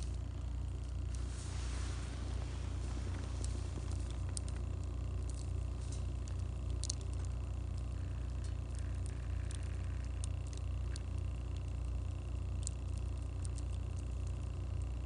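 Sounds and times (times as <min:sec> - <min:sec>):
steady low rumble: 0:00.0 - 0:15.0
campfire crackling and popping: 0:03.0 - 0:14.4.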